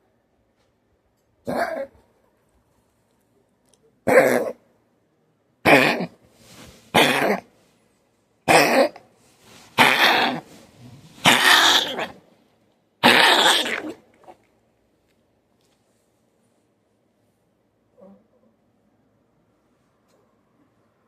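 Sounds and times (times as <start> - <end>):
dog coughing: 1.5 - 1.9, 4.1 - 4.6, 5.6 - 6.2, 6.9 - 7.5, 8.4 - 9.0, 9.8 - 10.4, 13.0 - 14.0.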